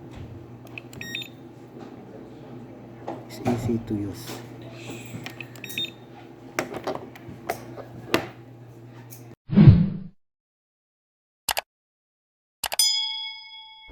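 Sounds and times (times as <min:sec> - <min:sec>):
steady low hum: 0:00.0 - 0:09.4
ringing ding sound effect: 0:12.8 - 0:13.9.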